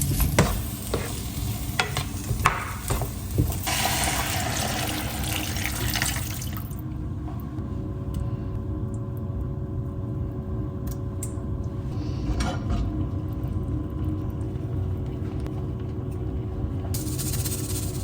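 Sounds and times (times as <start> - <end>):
running tap water: 0.0 - 6.8
steady low hum: 0.0 - 18.0.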